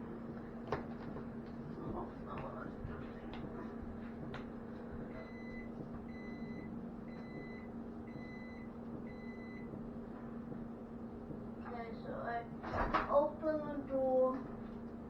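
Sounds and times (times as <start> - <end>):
steady low hum: 0.0 - 15.0
microwave oven beeps: 5.1 - 10.0.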